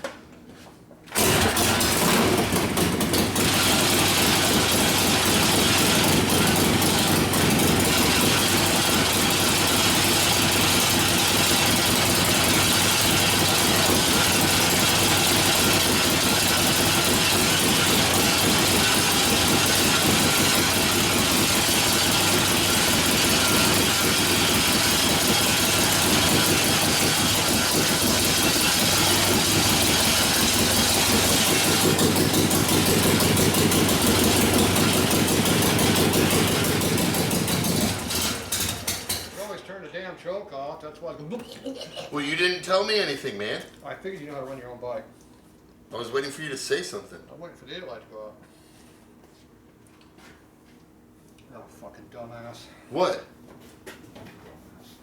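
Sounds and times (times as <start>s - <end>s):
motorcycle engine starting and running: 1.1s - 39.7s.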